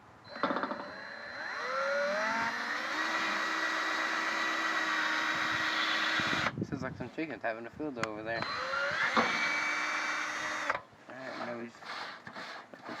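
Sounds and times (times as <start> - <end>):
electric drill whine: 0.2 - 6.6, 8.4 - 11.5.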